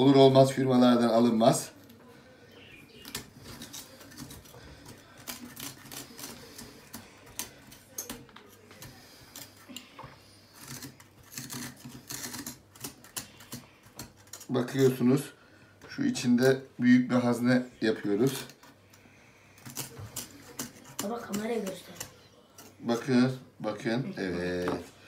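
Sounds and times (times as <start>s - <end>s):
hand tool scraping radish: 3.4s - 7.0s, 10.4s - 15.0s, 19.6s - 23.1s.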